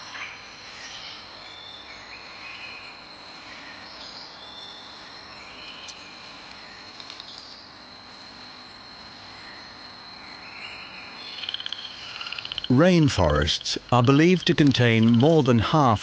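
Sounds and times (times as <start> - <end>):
high-pitched insect drone: 0.0 - 16.0.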